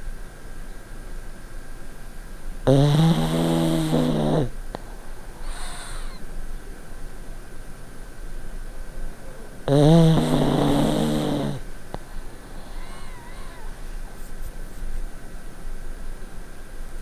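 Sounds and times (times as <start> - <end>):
dog snoring: 2.6 - 6.2, 9.4 - 14.5.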